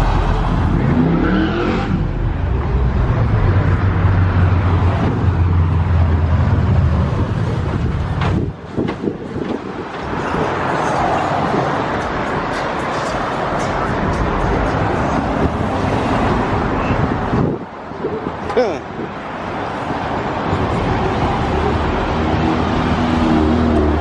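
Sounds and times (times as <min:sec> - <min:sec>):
street noise: 0:00.0 - 0:24.0
engine knocks: 0:05.0 - 0:10.6.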